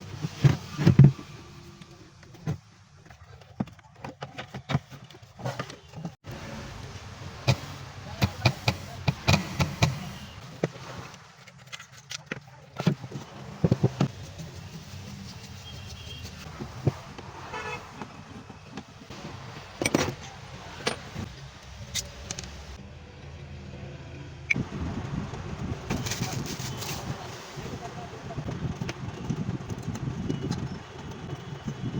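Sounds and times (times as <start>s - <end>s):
sharp clicks and knocks: 7.4s - 14.1s
tools and parts clicking: 19.8s - 22.8s.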